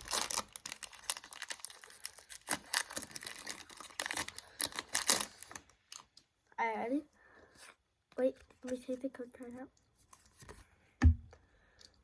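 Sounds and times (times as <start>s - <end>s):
foil wrapper tearing and crinkling: 0.0s - 6.0s.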